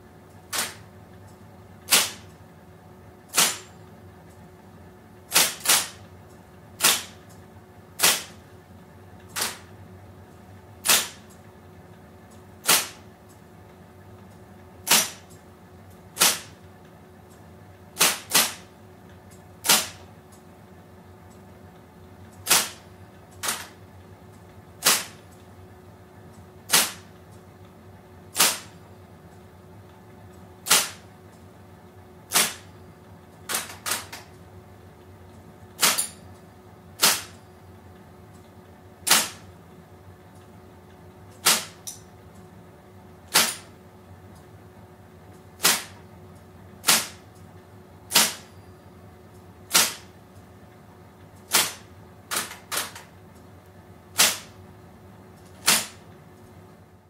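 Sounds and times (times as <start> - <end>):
typewriter motor humming: 0.4 - 0.9, 1.8 - 2.4, 3.3 - 3.8, 5.3 - 6.1, 6.8 - 7.4, 8.0 - 8.4, 9.2 - 9.8, 10.8 - 11.4, 12.6 - 13.1, 14.8 - 15.4, 16.1 - 16.6, 18.0 - 18.7, 19.6 - 20.1, 22.4 - 23.8, 24.8 - 25.4, 26.6 - 27.1, 28.3 - 28.8, 30.6 - 31.1, 32.3 - 32.7, 33.4 - 34.4, 35.7 - 36.2, 37.0 - 37.4, 39.0 - 39.5, 41.3 - 42.0, 43.3 - 43.8, 45.6 - 46.0, 46.8 - 47.3, 48.1 - 48.6, 49.7 - 50.2, 51.4 - 53.1, 54.1 - 54.6, 55.4 - 56.1.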